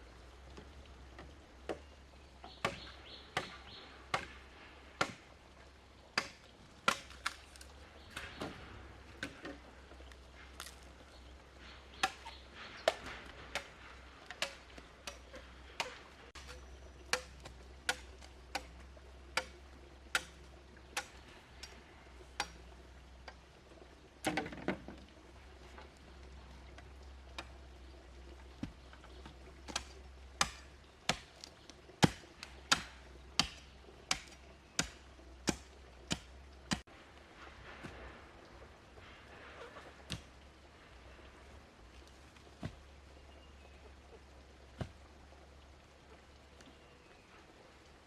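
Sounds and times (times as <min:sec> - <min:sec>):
hand tool striking wood: 0:05.0 - 0:05.2, 0:12.0 - 0:13.7, 0:14.3 - 0:15.2, 0:15.8 - 0:18.7, 0:29.7 - 0:31.3, 0:32.0 - 0:36.8.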